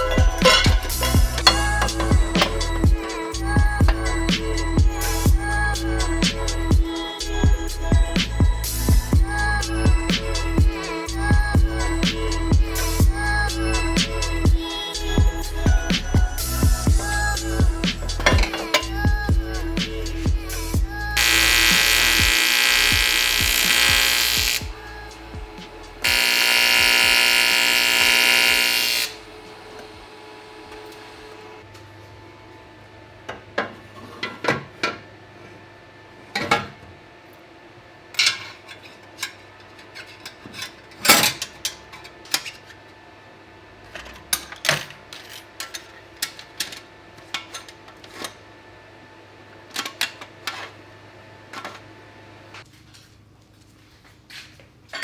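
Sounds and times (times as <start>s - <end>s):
high-pitched power tool running: 0.0s - 3.0s, 21.2s - 31.6s.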